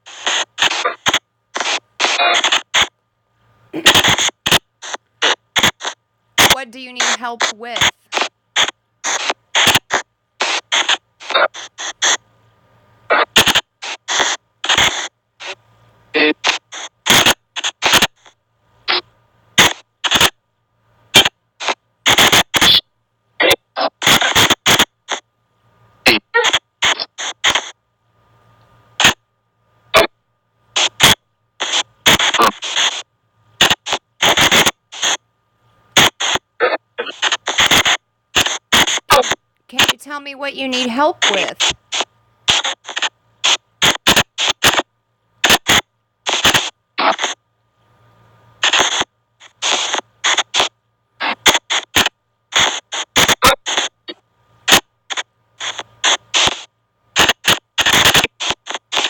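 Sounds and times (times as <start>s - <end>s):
radio-like static bursts: 0.0s - 3.0s, 3.7s - 12.2s, 13.0s - 20.4s, 21.1s - 25.3s, 26.0s - 27.8s, 28.9s - 29.3s, 29.9s - 35.3s, 35.9s - 47.4s, 48.6s - 59.0s
clipped voice-like fragments: 6.5s - 8.0s, 39.1s - 41.8s.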